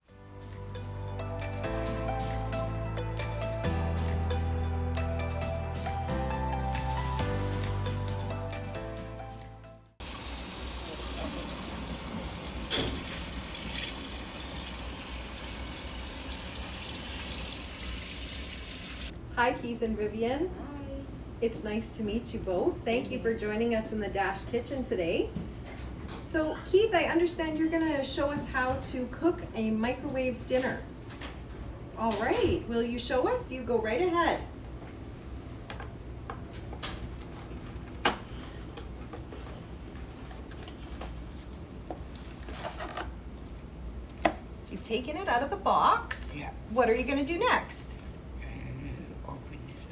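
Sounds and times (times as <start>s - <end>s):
steady low hum: 43.1s - 49.9s.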